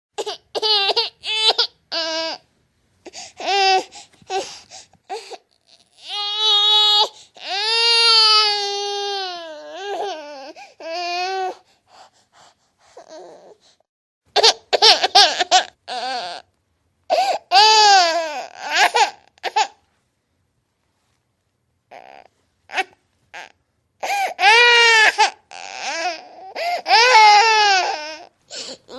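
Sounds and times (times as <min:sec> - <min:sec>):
baby crying: 0:00.2 - 0:02.4, 0:03.1 - 0:04.5, 0:05.1 - 0:11.6, 0:13.0 - 0:13.6, 0:14.4 - 0:16.5, 0:17.1 - 0:19.8, 0:21.9 - 0:28.9.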